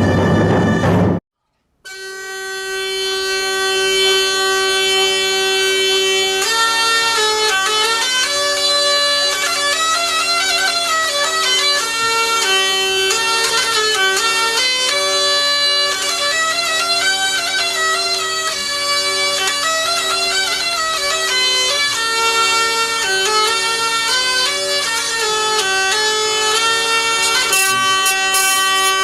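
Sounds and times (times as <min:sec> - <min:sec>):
bagpipe music: 0:00.0 - 0:01.2, 0:01.8 - 0:29.0.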